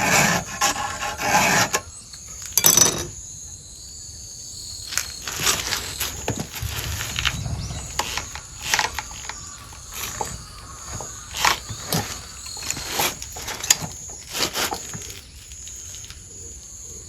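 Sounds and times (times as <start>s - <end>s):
file scraping chain tooth: 0.0s - 1.9s.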